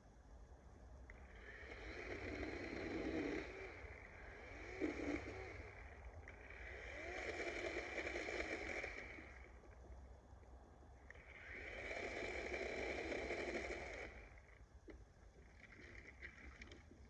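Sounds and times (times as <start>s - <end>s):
chainsaw cutting: 1.1s - 9.8s, 11.0s - 14.6s.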